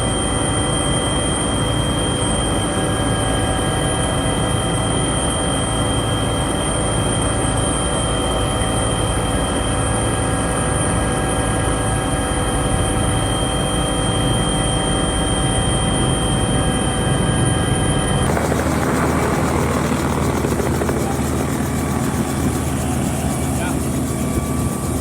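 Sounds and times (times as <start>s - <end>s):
helicopter engine whine: 0.0s - 25.0s
rotor blades beating: 18.2s - 25.0s.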